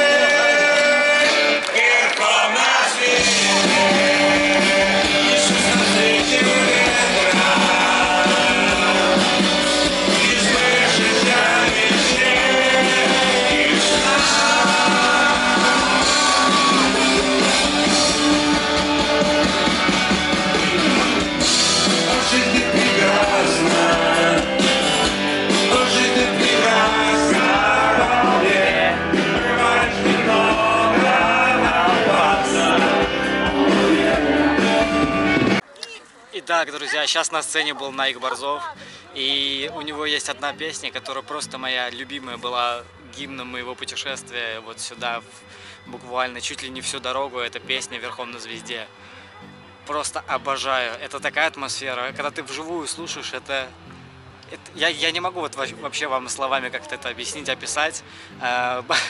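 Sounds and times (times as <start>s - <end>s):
person singing: 0.0s - 19.7s, 20.5s - 35.0s
live rock band playing: 3.0s - 35.7s.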